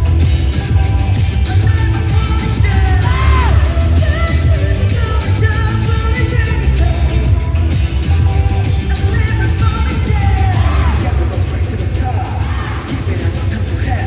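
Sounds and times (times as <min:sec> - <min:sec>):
crowd yelling: 0:00.0 - 0:05.9, 0:09.0 - 0:14.0
person singing: 0:00.0 - 0:14.0
pop concert music: 0:00.0 - 0:14.0.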